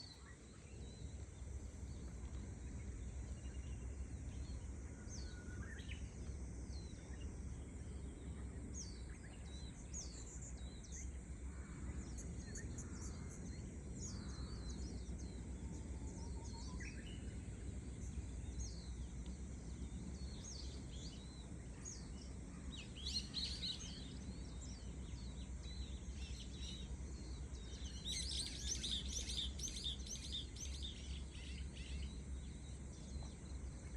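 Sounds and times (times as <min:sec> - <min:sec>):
cicada drone: 0:00.0 - 0:33.9
small birds chirping: 0:17.9 - 0:33.9.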